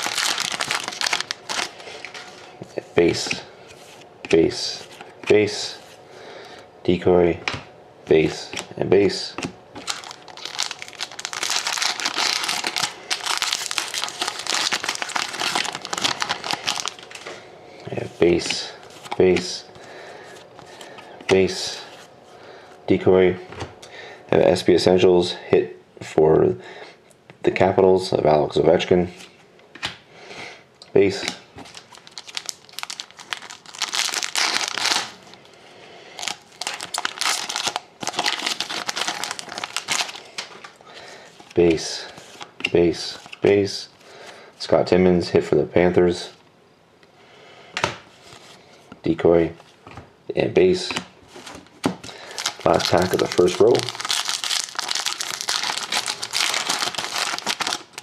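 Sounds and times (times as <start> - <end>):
foil wrapper tearing and crinkling: 0.0 - 2.4, 9.8 - 17.3, 31.6 - 35.4, 36.2 - 40.5, 52.0 - 58.0.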